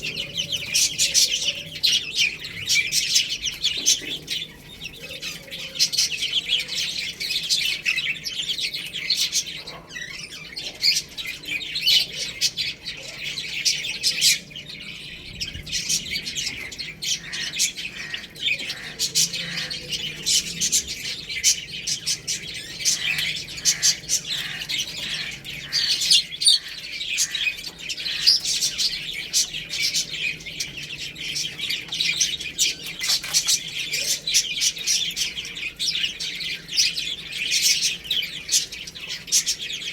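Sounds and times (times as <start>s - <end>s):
baby chicks chirping: 0.0s - 39.9s.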